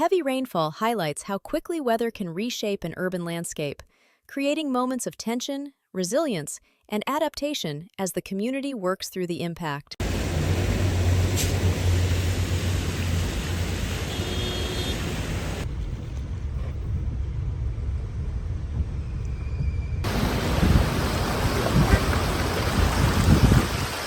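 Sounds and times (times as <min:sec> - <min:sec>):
broad traffic hiss: 0:10.0 - 0:15.6, 0:20.1 - 0:24.0
low rumble of vehicles: 0:10.0 - 0:23.8.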